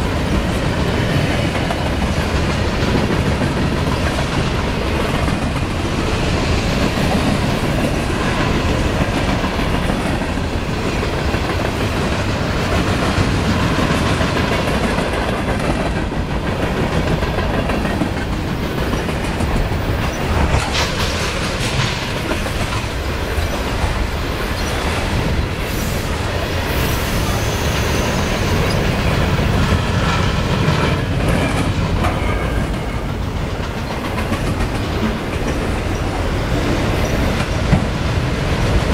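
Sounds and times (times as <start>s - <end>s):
freight train cars rumbling past: 0.0s - 38.9s
wheels screeching on rail: 16.6s - 38.9s.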